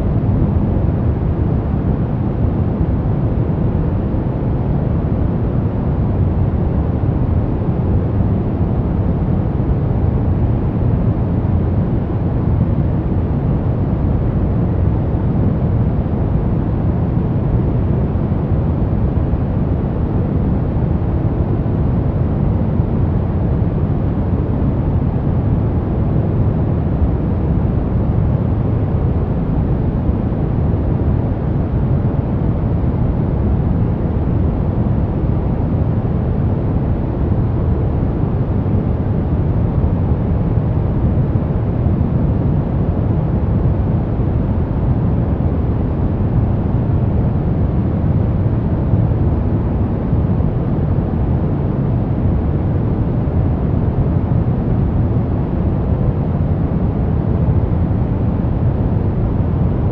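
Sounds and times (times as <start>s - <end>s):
deep muffled white noise: 0.0s - 59.9s.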